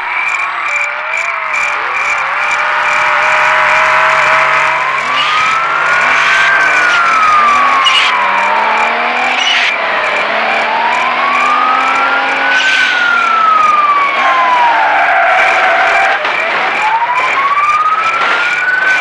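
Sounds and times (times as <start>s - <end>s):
siren wailing: 0.0s - 19.0s
steady high tone: 0.4s - 14.8s.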